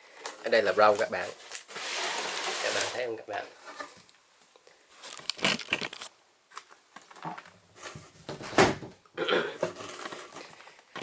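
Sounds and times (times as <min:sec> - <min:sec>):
packaging rustling: 0:05.0 - 0:07.4.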